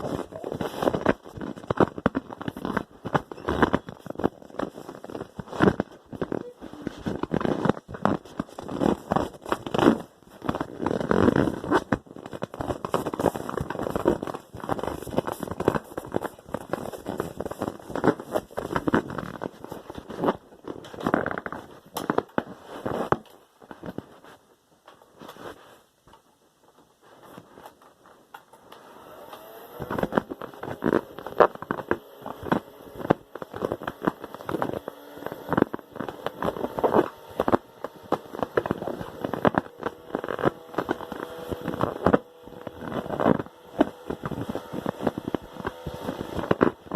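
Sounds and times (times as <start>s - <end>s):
sputtering crackling fart sounds: 0.0s - 23.2s, 29.3s - 46.9s.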